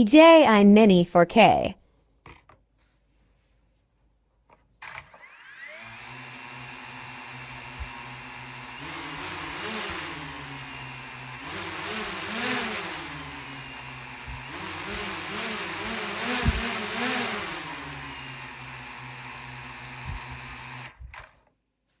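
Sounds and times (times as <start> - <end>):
drone motors buzzing whine: 5.2 - 21.0.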